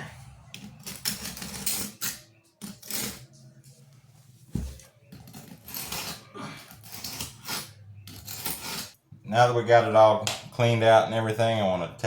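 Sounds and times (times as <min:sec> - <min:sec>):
knife blade scraping tile grout: 0:00.6 - 0:03.3, 0:05.2 - 0:09.0.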